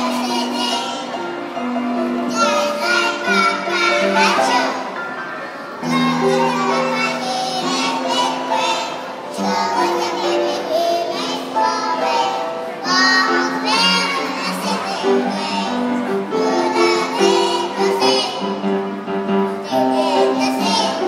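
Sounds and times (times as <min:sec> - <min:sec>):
group of voices singing: 0:02.3 - 0:05.0, 0:05.8 - 0:18.5, 0:19.6 - 0:21.0.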